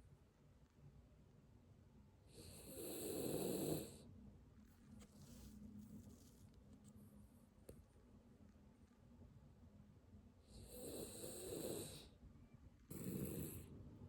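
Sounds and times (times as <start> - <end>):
dog snoring: 2.3 - 4.0, 10.5 - 12.1, 12.9 - 13.7.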